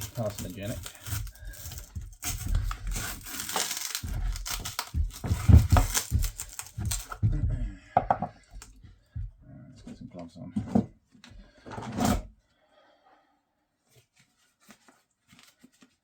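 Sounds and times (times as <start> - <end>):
foam tearing and rustling: 0.0 - 7.4.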